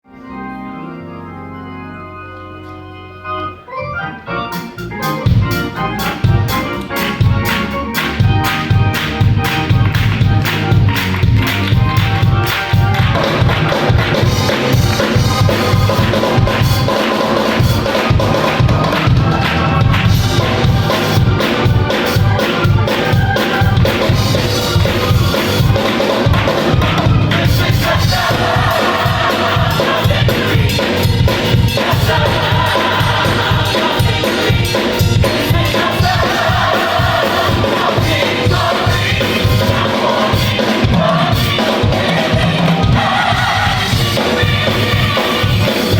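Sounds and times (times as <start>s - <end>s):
up-tempo gospel music: 0.1s - 45.9s
drum kit beat: 4.5s - 45.9s
choir singing held notes: 8.5s - 45.9s.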